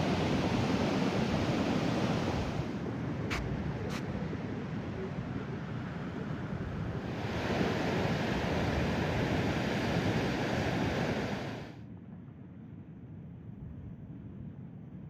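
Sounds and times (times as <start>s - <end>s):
ocean surf breaking on beach: 0.0s - 2.8s, 7.0s - 11.8s.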